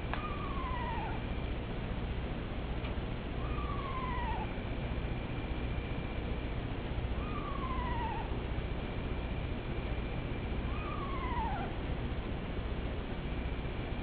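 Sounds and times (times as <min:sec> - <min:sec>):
animal calling: 0:00.0 - 0:01.4, 0:03.4 - 0:04.6, 0:07.2 - 0:08.4, 0:10.6 - 0:11.8.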